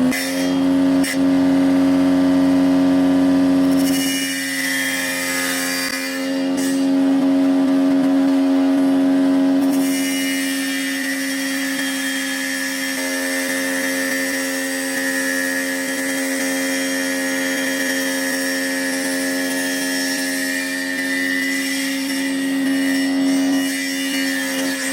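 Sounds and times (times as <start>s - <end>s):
power tool motor humming with whine: 0.0s - 24.9s.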